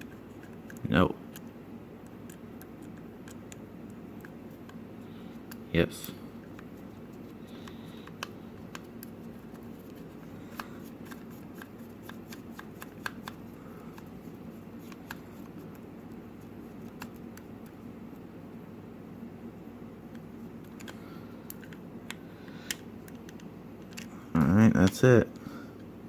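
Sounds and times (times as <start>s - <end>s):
steady low hum: 0.0s - 26.0s
plastic mouse parts clicking: 7.6s - 14.1s.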